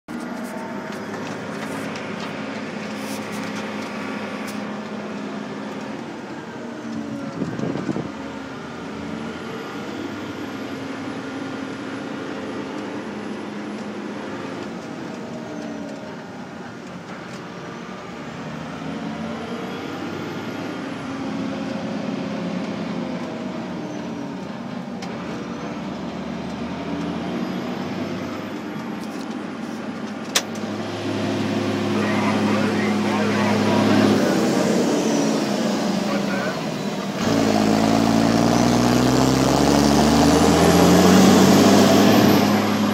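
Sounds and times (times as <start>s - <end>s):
tractor diesel engine running: 0.1s - 42.9s.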